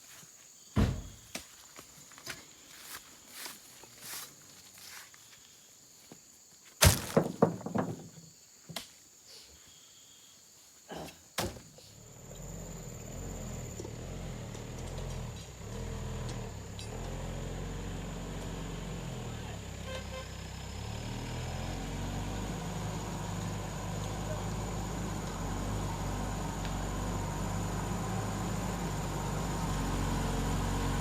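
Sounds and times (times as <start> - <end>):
scattered knocks and thumps: 6.8 - 8.2
truck engine running: 12.5 - 31.0.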